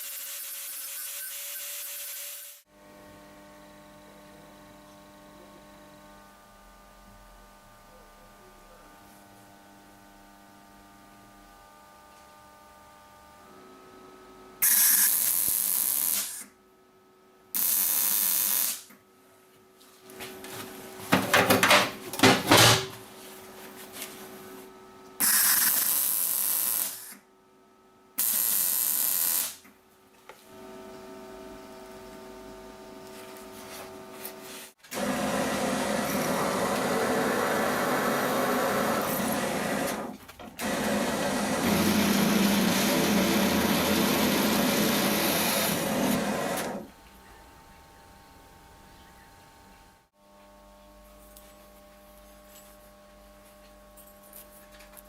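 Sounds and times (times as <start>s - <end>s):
power tools cutting metal: 0.0s - 2.6s, 34.9s - 46.9s.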